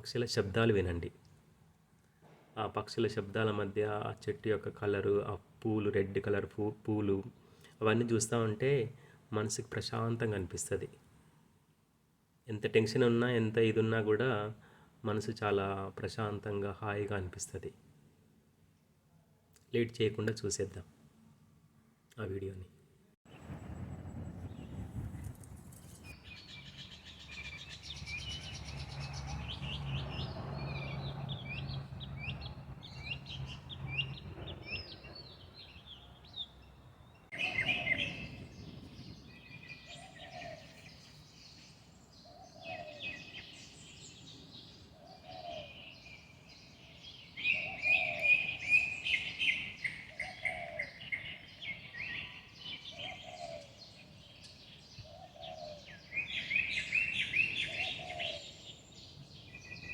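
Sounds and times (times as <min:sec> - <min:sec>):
birds chirping: 0:25.8 - 0:59.9
low bird call: 0:37.2 - 0:44.2, 0:44.8 - 0:59.9.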